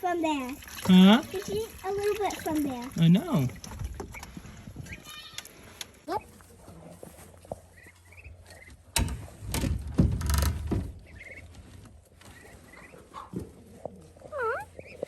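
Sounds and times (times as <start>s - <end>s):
ducklings peeping: 3.0s - 6.6s, 7.3s - 9.0s, 10.8s - 15.0s.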